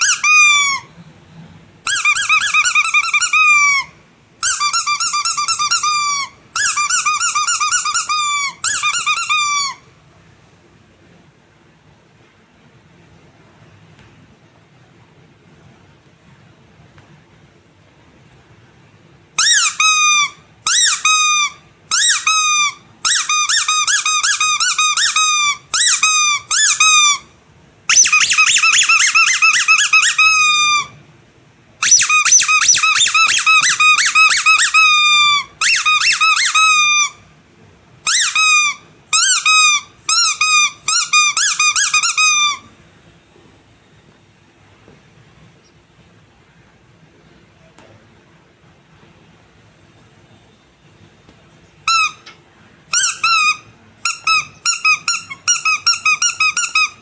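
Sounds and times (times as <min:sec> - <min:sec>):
squeaky rubber toy squeaks: 0:00.0 - 0:01.0, 0:01.8 - 0:09.9, 0:19.4 - 0:31.0, 0:31.8 - 0:37.2, 0:38.0 - 0:42.7, 0:51.8 - 0:57.0.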